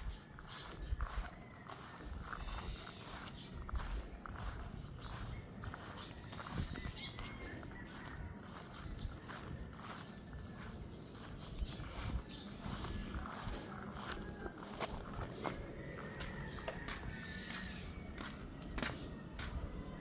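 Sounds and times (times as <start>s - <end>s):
farmyard animals: 0.0s - 18.5s
steady background noise: 0.0s - 20.0s.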